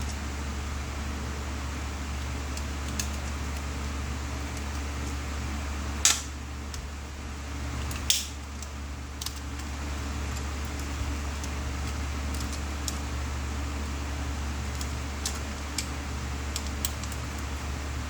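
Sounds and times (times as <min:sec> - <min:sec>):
steady low hum: 0:00.0 - 0:18.0
small hard objects clicking: 0:02.2 - 0:03.7, 0:07.8 - 0:13.1, 0:14.6 - 0:17.6.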